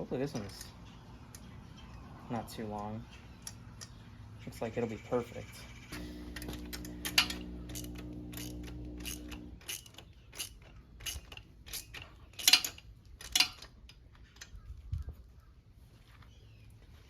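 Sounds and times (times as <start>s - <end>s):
low steady hum: 3.0s - 10.0s
hand ratchet clicking: 6.4s - 14.0s.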